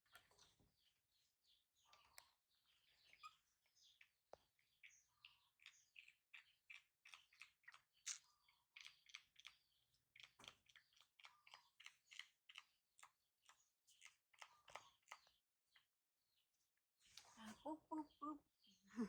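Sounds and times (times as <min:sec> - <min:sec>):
faint wet chewing: 0:03.9 - 0:15.4.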